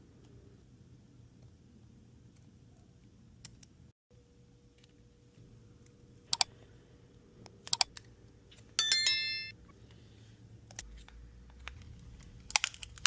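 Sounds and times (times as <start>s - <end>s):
bright metallic ring: 8.8s - 9.6s.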